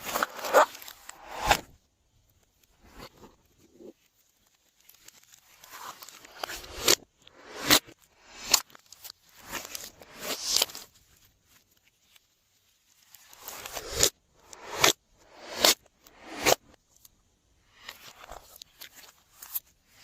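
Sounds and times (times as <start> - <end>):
soft crinkly squishing: 2.0 - 6.6, 8.0 - 14.5, 16.7 - 20.0.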